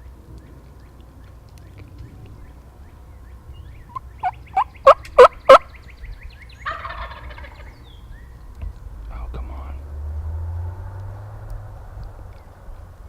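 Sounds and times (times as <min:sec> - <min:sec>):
turkey yelps: 0:03.9 - 0:05.8, 0:06.6 - 0:07.8
rattling turkey call: 0:06.6 - 0:07.7.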